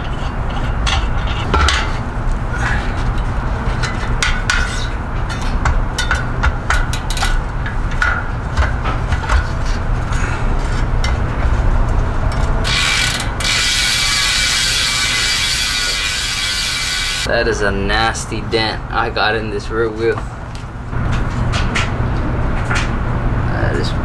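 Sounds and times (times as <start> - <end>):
bike hub buzzing as wheel spins: 0.0 - 17.3
bike hub ratcheting clicks: 12.4 - 17.3.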